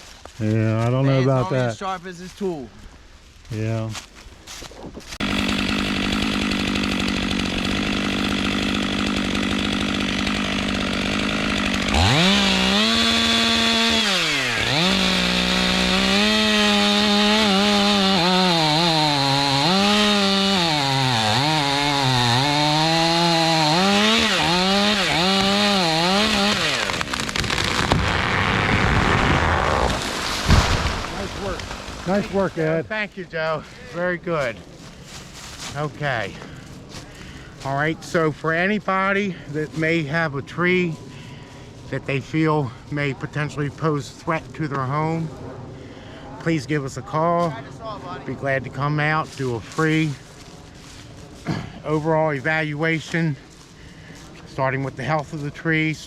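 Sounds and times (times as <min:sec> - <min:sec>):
chainsaw cutting wood: 0:05.1 - 0:32.7.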